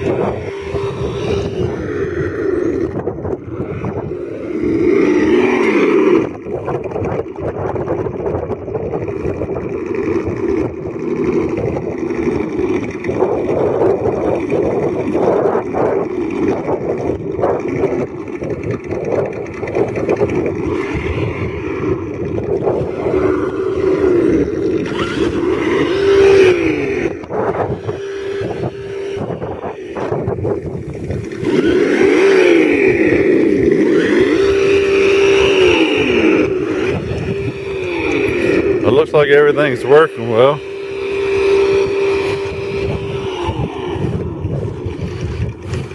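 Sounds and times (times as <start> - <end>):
simulated engine through speaker: 0.0 - 8.6, 9.2 - 45.9
toy truck clicks and scrapes: 22.6 - 30.1.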